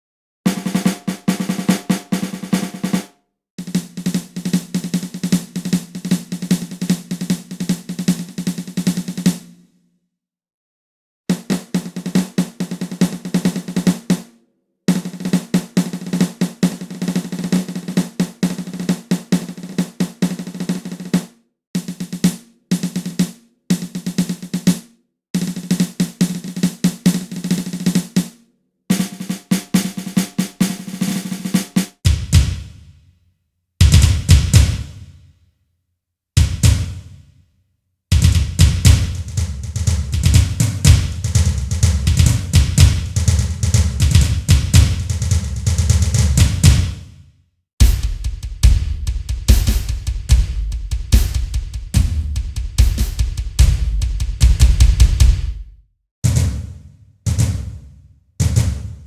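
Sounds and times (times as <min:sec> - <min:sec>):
drum rolls: 0:31.6 - 0:32.9, 0:33.8 - 0:35.2, 0:36.4 - 0:37.2, 0:38.1 - 0:47.1, 0:47.8 - 0:59.0.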